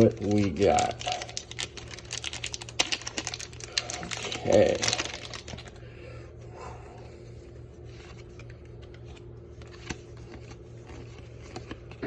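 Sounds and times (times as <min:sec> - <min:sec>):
wrapper rustling: 0:00.0 - 0:05.8
steady low hum: 0:00.0 - 0:12.0.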